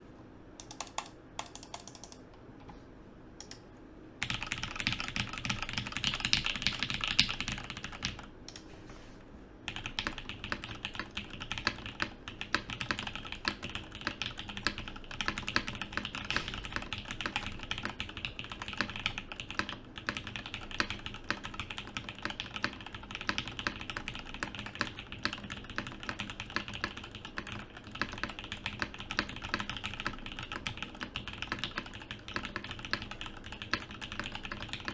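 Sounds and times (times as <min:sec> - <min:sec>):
mechanical keyboard typing: 0:00.6 - 0:02.2, 0:04.2 - 0:08.6, 0:09.7 - 0:34.9.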